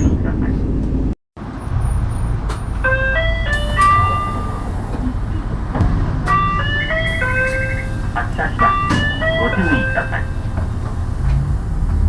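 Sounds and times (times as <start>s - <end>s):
bus engine idling: 0.0s - 12.0s
electronic door chime melody: 3.1s - 4.6s.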